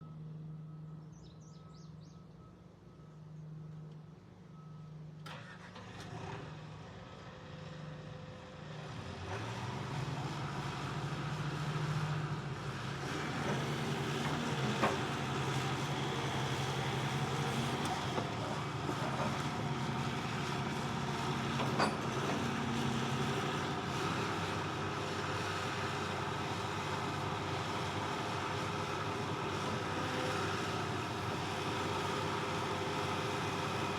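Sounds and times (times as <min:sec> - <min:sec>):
excavator diesel engine revving: 0:08.6 - 0:33.9.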